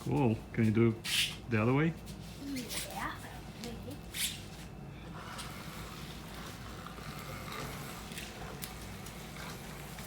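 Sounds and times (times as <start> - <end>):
small motor droning: 5.0 - 10.0.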